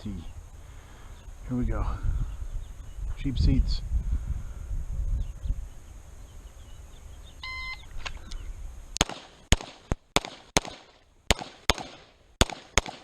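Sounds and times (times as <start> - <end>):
rapid pistol shots: 9.0 - 13.0.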